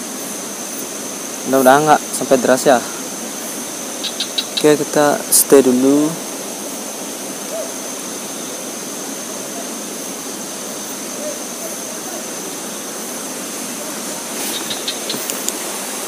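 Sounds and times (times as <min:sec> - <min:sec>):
fast river rushing: 0:00.0 - 0:16.0
light ticks: 0:14.8 - 0:15.6.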